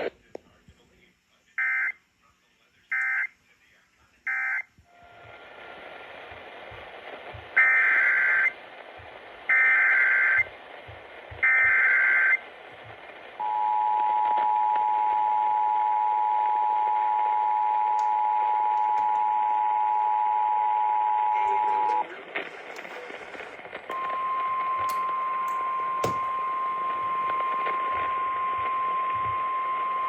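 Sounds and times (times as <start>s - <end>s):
radio hiss: 0.0s - 30.0s
two-tone attention signal: 23.9s - 30.0s.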